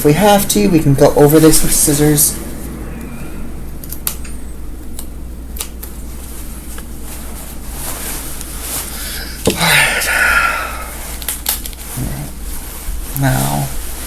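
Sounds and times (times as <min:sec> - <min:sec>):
low background hum: 0:00.0 - 0:14.0
fabric rustle: 0:00.6 - 0:03.4, 0:05.9 - 0:14.0.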